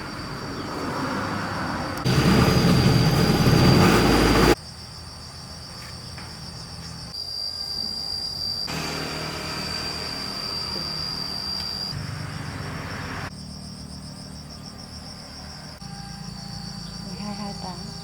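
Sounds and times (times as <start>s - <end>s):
insects trilling: 0.0s - 18.0s
rough mechanical rumbling noise: 0.2s - 4.6s, 8.7s - 13.4s.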